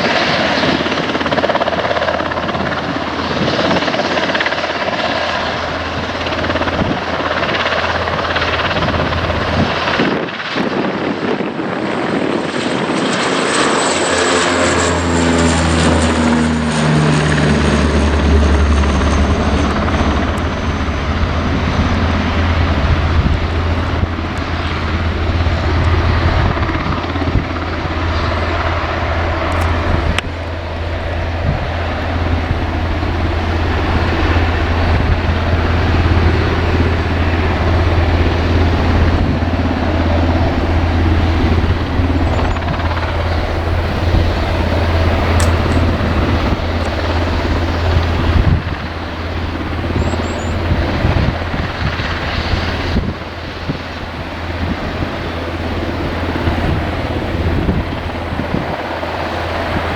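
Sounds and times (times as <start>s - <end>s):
turboprop propeller drone: 0.0s - 59.9s.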